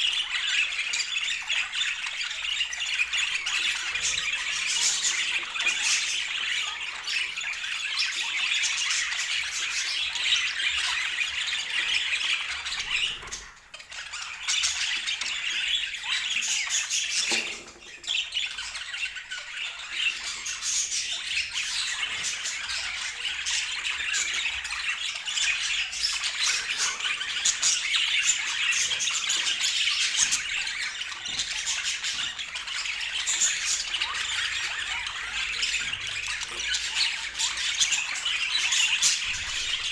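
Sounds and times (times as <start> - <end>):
budgerigars chattering and chirping: 0.0 - 39.9.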